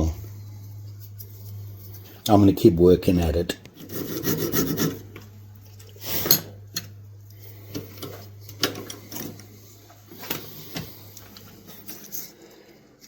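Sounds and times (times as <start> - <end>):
low steady hum: 0.0 - 13.0
file rasping across steel: 3.8 - 5.1.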